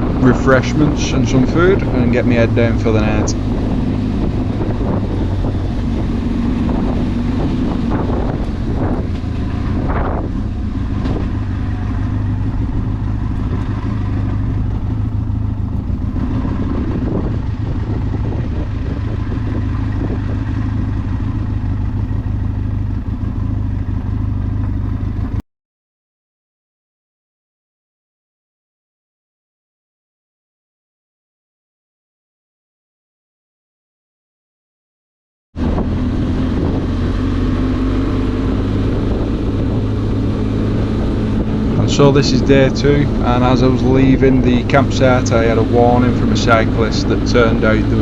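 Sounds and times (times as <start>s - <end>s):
motorcycle engine running: 0.0s - 25.4s, 35.6s - 48.0s.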